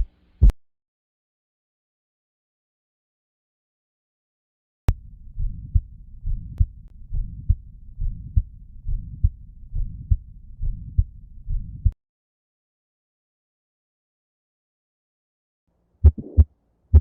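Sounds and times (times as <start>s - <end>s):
heartbeat: 0.0s - 0.6s, 4.9s - 12.0s, 16.0s - 17.0s
low rumbling heart murmur: 4.9s - 12.0s.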